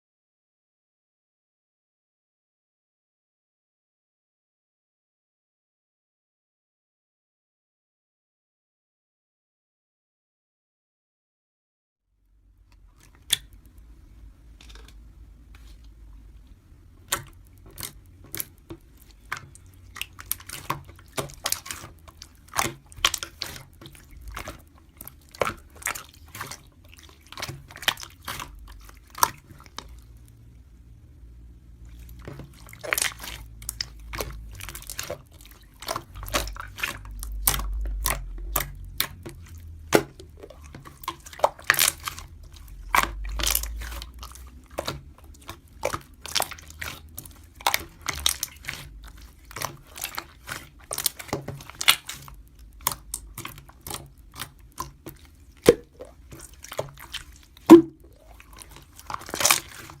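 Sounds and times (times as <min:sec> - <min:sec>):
crunching and wet clicking: 0:12.6 - 0:31.0, 0:31.7 - 1:00.0
faint low rumble: 0:23.9 - 0:45.7.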